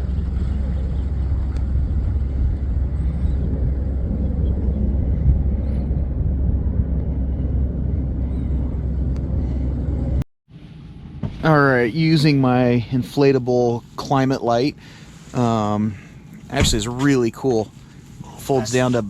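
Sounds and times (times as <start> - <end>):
wind buffeting microphone: 0.0 - 10.2.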